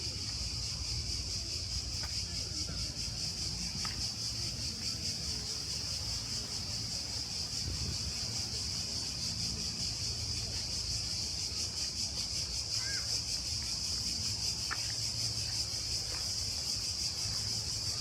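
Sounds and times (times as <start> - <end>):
cicadas buzzing: 0.0 - 18.0.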